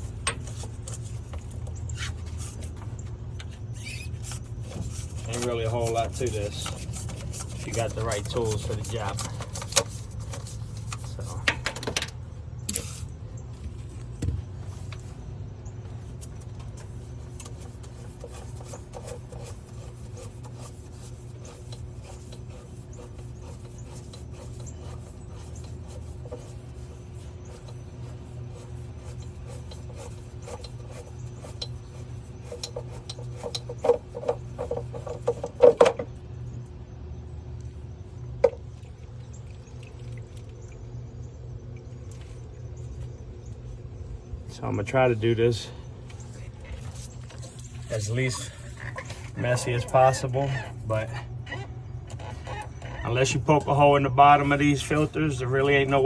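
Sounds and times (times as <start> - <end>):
filter wrench scraping and clicking: 0.0 - 13.1, 16.2 - 36.1, 46.1 - 53.8.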